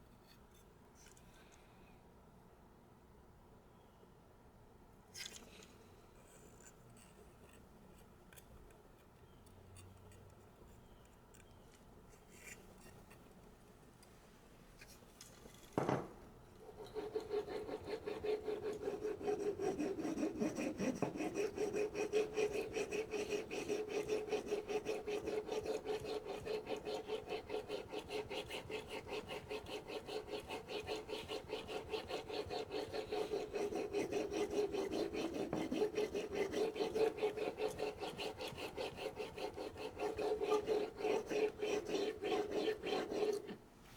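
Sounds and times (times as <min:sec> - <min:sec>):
knife rubbing on whetstone: 0:16.6 - 0:43.6.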